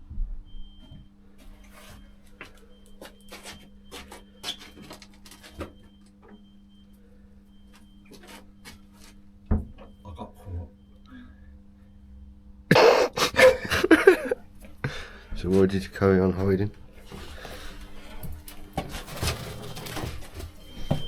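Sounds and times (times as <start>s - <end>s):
low electrical hum: 9.2s - 21.0s.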